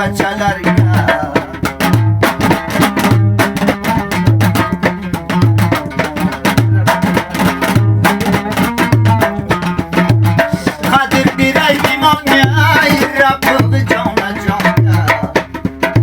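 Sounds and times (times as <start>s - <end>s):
hand drum beat: 0.0s - 16.0s
lute strummed fast: 0.0s - 16.0s.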